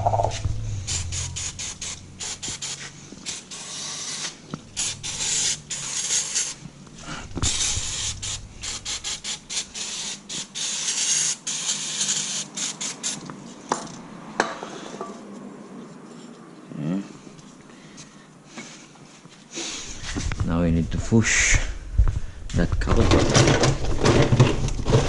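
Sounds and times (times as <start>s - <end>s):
aerosol spray hissing: 0.8s - 6.6s, 7.4s - 13.2s.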